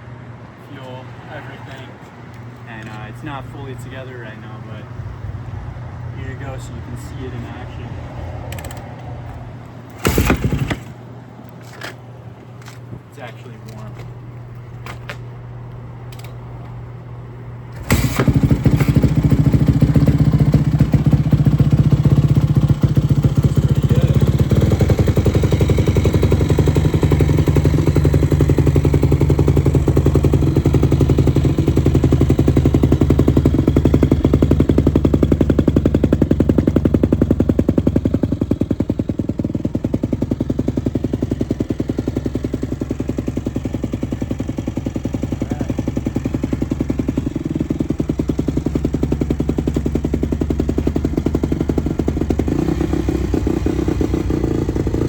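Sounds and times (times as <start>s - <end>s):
motorcycle engine revving: 10.0s - 11.0s, 17.7s - 55.0s.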